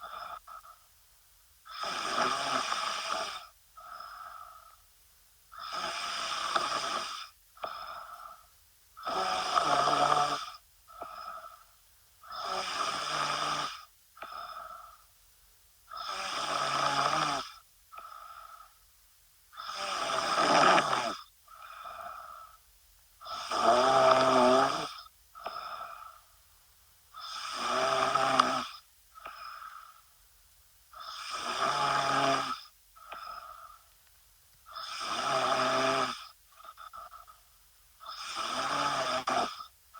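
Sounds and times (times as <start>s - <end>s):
woman snoring: 1.7s - 4.8s, 5.5s - 8.4s, 9.0s - 15.0s, 15.9s - 18.8s, 19.5s - 22.6s, 23.2s - 26.2s, 27.2s - 30.0s, 31.0s - 33.8s, 34.7s - 37.4s, 38.0s - 39.7s.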